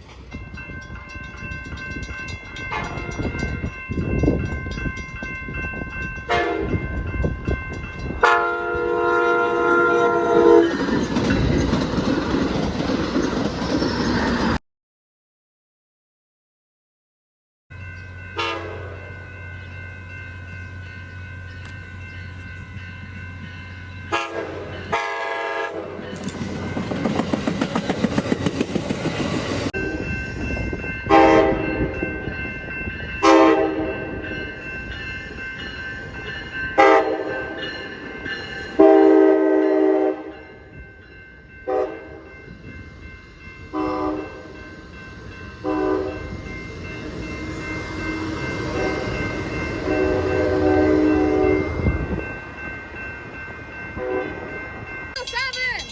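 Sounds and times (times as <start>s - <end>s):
train horn blasts: 6.3s - 6.8s, 8.2s - 10.7s, 18.4s - 19.0s, 24.1s - 26.0s, 31.1s - 31.6s, 33.2s - 34.0s, 36.8s - 37.3s, 38.8s - 40.3s, 41.7s - 42.2s, 43.7s - 44.4s, 45.6s - 46.2s, 49.8s - 51.9s, 54.0s - 54.4s
train wheel clatter: 10.3s - 14.6s, 26.0s - 29.8s.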